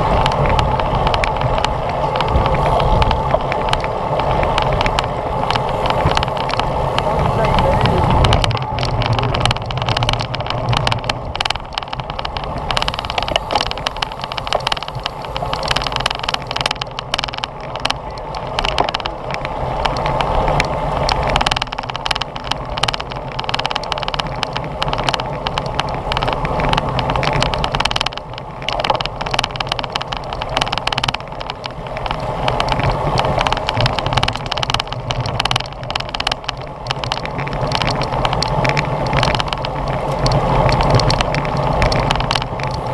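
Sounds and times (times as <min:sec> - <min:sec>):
bicycle rattles and knocks: 0:00.0 - 0:42.9
wind rushing over microphone: 0:00.0 - 0:42.9.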